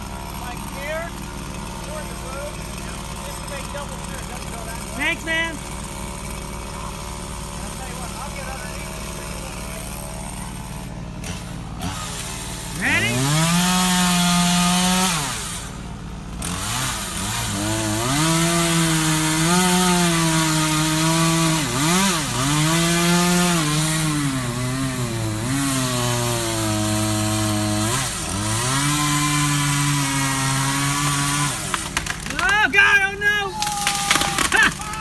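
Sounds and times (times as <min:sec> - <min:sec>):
chainsaw revving and cutting wood: 0:00.0 - 0:35.0.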